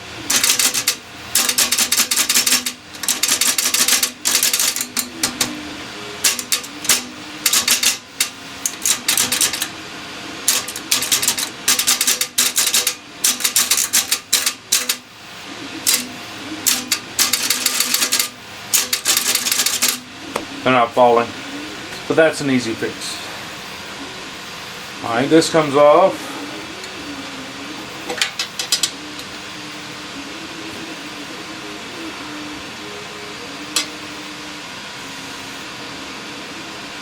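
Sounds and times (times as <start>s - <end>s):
cash register mechanism clattering: 0.2s - 5.6s, 6.2s - 9.8s, 10.4s - 15.1s, 15.7s - 20.4s, 28.1s - 29.3s.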